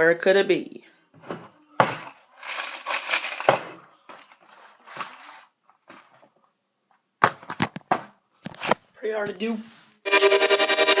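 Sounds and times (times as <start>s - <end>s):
objects clattering: 1.2s - 6.3s
objects rustling and clinking: 1.3s - 6.4s.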